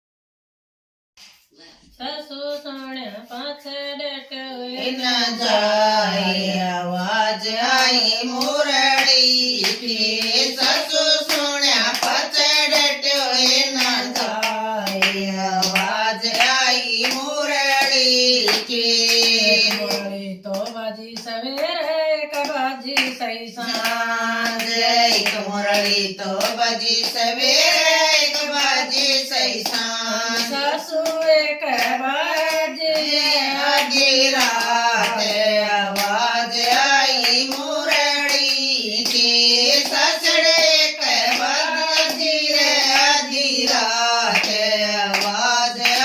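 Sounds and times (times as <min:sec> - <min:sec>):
high voice singing devotional song: 0:01.2 - 0:46.0
hand clapping in time: 0:07.8 - 0:46.0.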